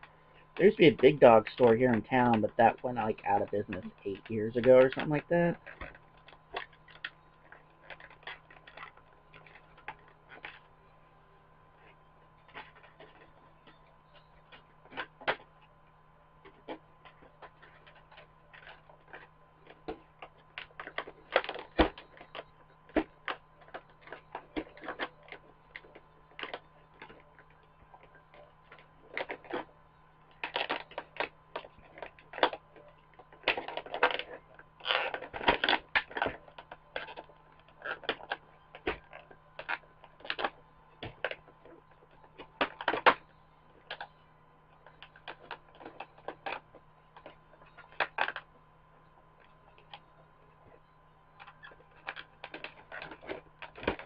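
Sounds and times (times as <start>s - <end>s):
steady low hum: 0.0s - 54.0s
packaging crinkling rustle: 0.4s - 10.7s.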